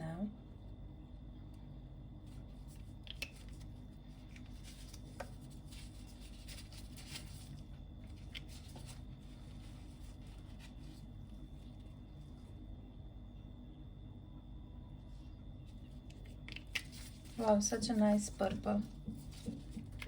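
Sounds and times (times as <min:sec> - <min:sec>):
low steady hum: 0:00.0 - 0:20.0
soft rustling: 0:02.2 - 0:12.6, 0:15.1 - 0:20.0.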